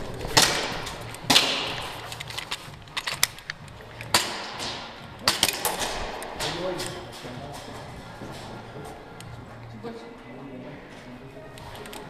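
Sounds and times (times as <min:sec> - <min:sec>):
airsoft pistol shots echoing: 0:00.2 - 0:02.2, 0:04.0 - 0:07.2.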